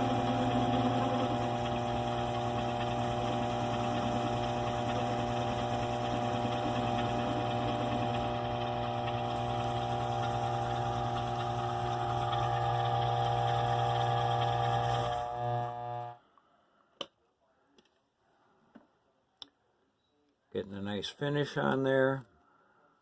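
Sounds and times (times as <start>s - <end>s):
lathe motor humming: 0.0s - 16.2s.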